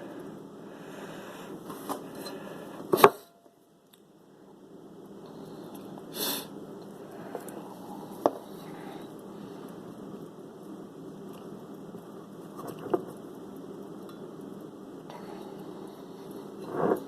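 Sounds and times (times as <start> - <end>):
low room noise: 0.0 - 17.0.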